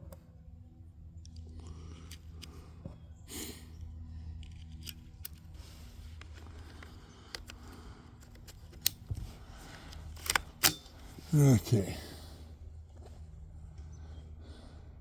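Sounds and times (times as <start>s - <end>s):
low steady hum: 0.0s - 15.0s
cartridges clicking into magazine: 4.4s - 9.1s, 9.9s - 11.1s.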